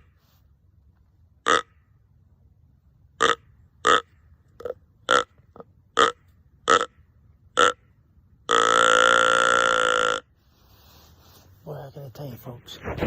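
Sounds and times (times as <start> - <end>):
deer grunt call: 8.5 - 10.3.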